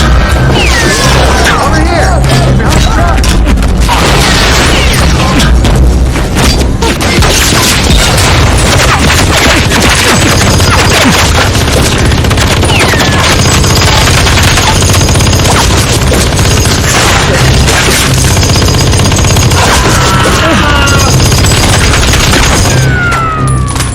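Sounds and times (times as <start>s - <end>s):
booms and impacts: 2.4s - 12.4s
automatic gunfire: 7.7s - 23.0s.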